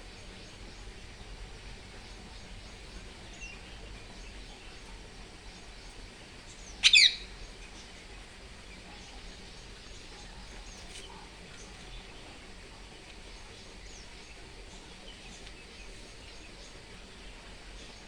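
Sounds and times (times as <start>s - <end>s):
steady background hiss: 0.0s - 18.0s
faint bird chirps: 2.0s - 12.4s
parrot squawk: 6.8s - 7.2s.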